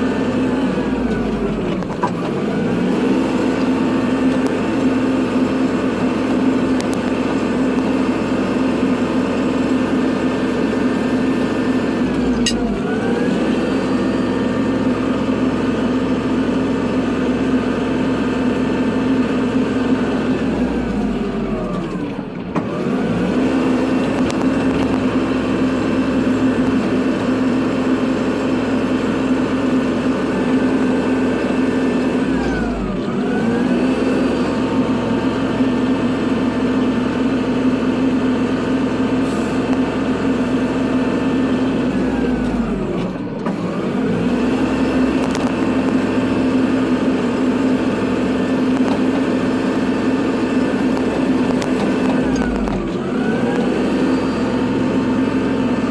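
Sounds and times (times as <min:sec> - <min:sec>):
tractor diesel engine running: 0:00.0 - 0:55.9.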